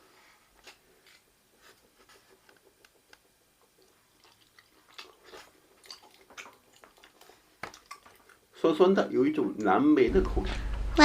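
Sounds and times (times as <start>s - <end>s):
chewing gummy candy: 3.6s - 8.5s.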